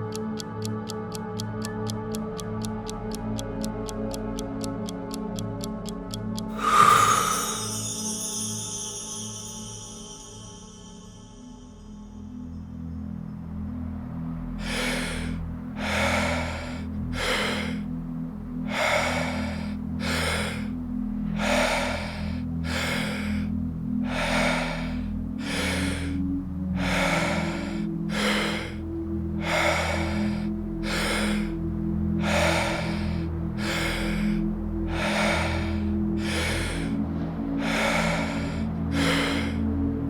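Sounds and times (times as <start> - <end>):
low ambient music drone: 0.0 - 40.0
forceful breathing through mouth: 6.5 - 9.7, 14.6 - 17.9, 18.6 - 40.0.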